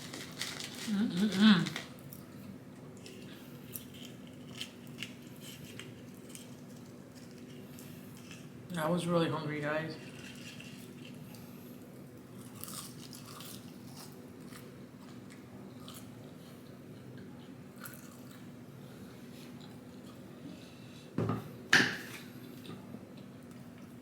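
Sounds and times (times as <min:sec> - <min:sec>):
chewing and biting food: 0:12.3 - 0:17.2, 0:17.8 - 0:18.5.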